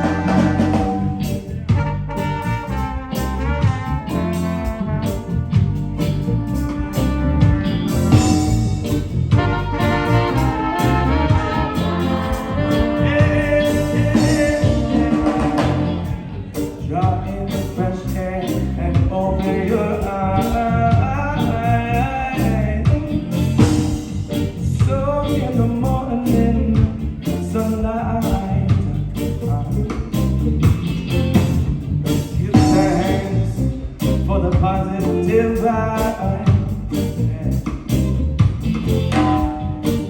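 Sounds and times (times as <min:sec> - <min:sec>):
horn section holding long notes: 0:00.0 - 0:16.2
lead voice singing: 0:00.0 - 0:38.2
live band playing: 0:00.0 - 0:40.0.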